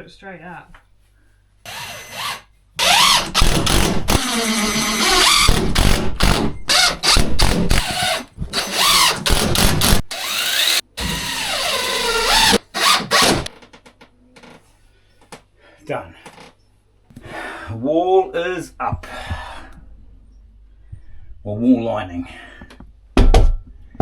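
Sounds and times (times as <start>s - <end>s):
power drill driving screws: 1.7s - 13.5s.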